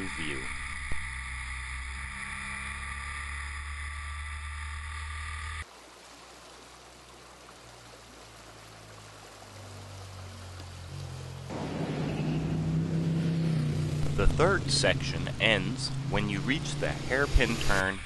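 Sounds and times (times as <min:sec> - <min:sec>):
droning hum of held tones: 0:00.0 - 0:05.6
creek water rushing: 0:04.1 - 0:18.0.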